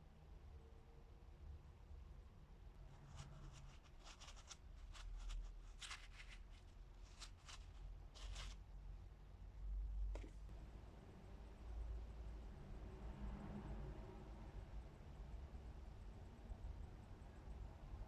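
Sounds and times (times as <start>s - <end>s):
short handling scrapes: 3.0s - 8.6s.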